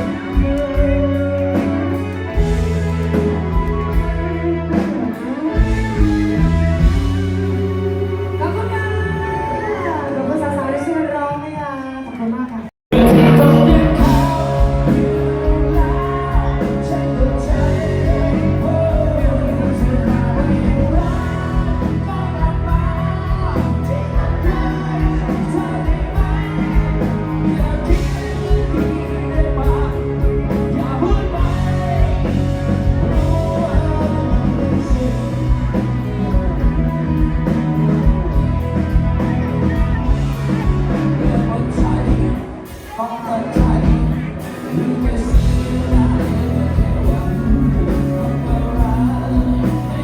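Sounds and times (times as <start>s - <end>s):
held bass notes: 0.0s - 9.8s, 12.9s - 42.6s, 45.1s - 50.0s
rock band playing: 0.0s - 10.5s, 12.9s - 50.0s
person singing: 12.9s - 39.0s, 40.0s - 50.0s
steady drum beat: 12.9s - 42.9s, 43.6s - 50.0s.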